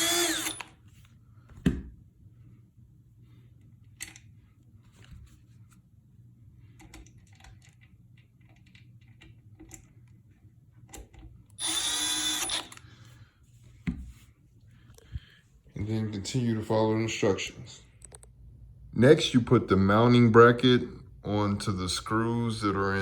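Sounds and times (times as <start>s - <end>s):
power drill driving a screw: 0.0s - 0.7s, 11.6s - 12.8s
clicks and handling of parts: 3.6s - 5.4s, 6.7s - 10.2s, 18.0s - 18.4s.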